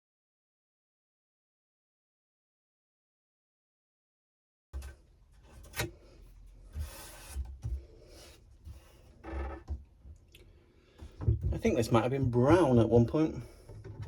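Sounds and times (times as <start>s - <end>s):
hand scraping painted wood: 4.8s - 9.7s.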